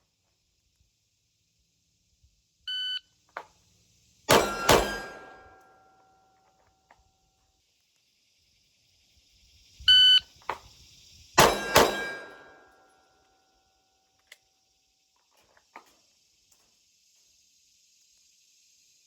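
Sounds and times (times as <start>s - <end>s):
handgun shots: 4.3s - 5.7s, 11.4s - 12.6s.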